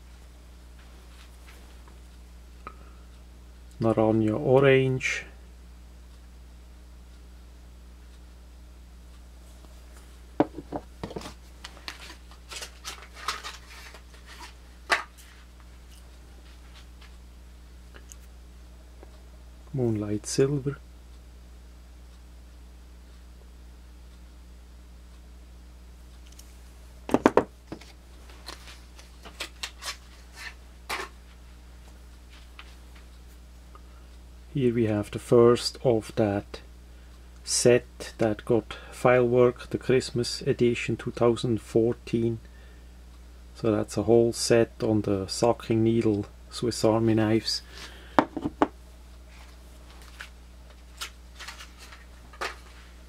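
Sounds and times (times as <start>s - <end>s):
steady low hum: 0.0s - 53.0s.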